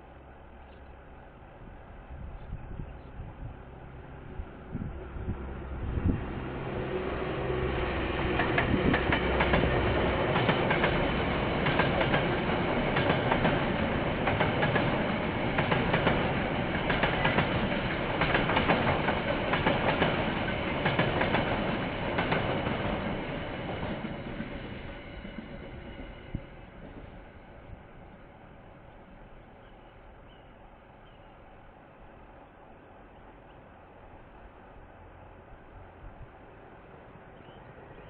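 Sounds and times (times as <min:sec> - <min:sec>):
locomotive engine hum: 0:00.0 - 0:38.0
wheels clicking over rail joints: 0:08.3 - 0:24.7.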